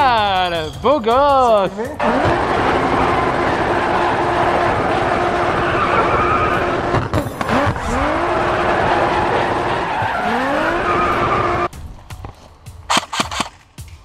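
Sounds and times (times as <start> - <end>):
car engine revving: 2.0 - 11.7
car tyres screeching: 2.0 - 11.7.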